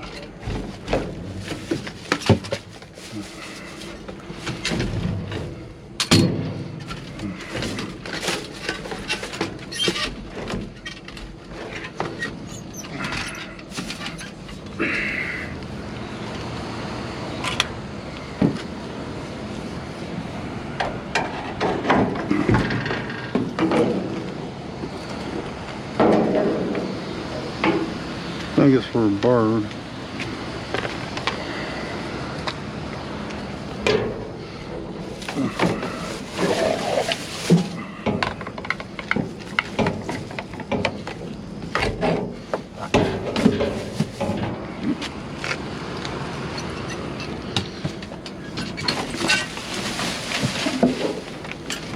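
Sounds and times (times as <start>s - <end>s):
objects being rummaged: 0.0s - 15.6s, 33.6s - 45.7s, 46.5s - 51.9s
background rumble: 0.0s - 51.9s.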